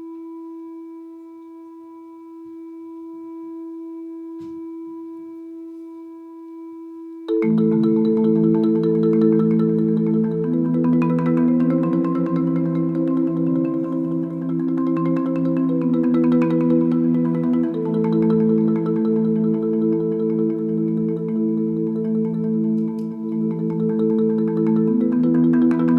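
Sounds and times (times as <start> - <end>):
marimba playing fast chords: 7.3 - 25.9.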